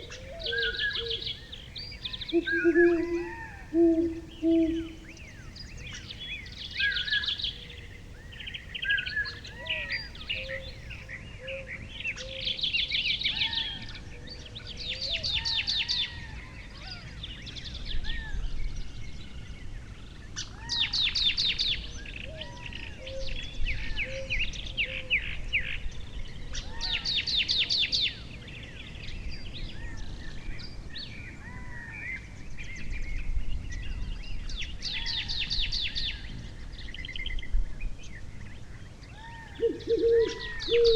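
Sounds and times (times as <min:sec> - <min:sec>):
lower whistled bird notes: 0:00.0 - 0:05.8, 0:39.6 - 0:40.9
high bird trills: 0:02.1 - 0:05.3, 0:39.6 - 0:40.9.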